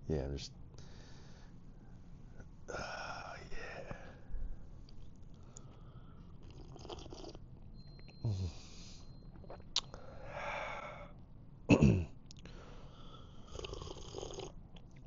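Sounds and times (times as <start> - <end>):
man sighing contentedly: 2.7 - 4.2, 8.2 - 9.0
man slurping coffee: 6.4 - 7.4, 13.5 - 14.5.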